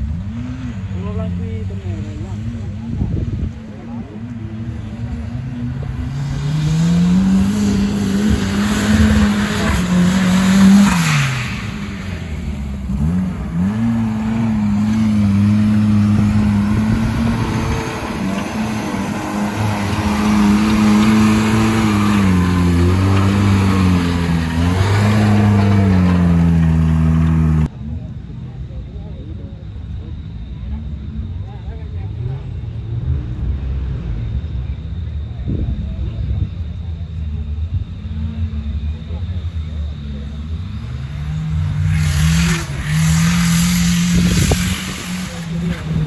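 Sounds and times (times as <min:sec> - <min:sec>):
vehicle engine revving: 0:00.0 - 0:27.7, 0:38.2 - 0:46.0.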